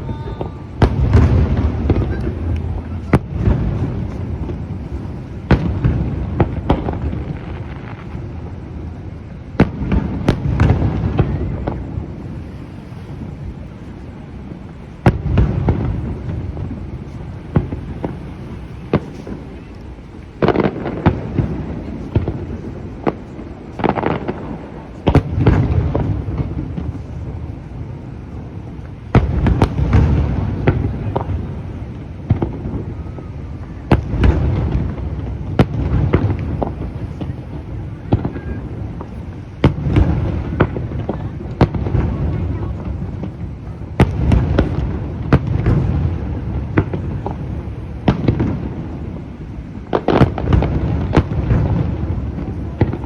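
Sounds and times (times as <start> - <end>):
fireworks bursting with sharp bangs: 0.0 - 53.0.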